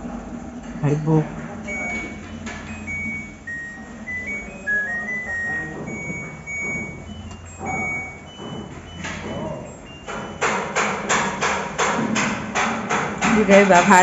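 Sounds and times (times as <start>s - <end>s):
low hum: 0.0s - 10.0s
washing machine electronic tune: 0.0s - 14.0s.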